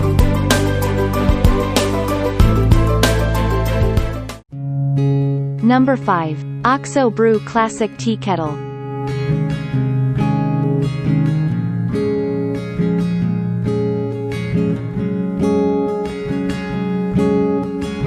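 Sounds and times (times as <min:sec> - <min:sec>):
acoustic guitar strumming: 0:00.0 - 0:03.9, 0:04.5 - 0:18.0.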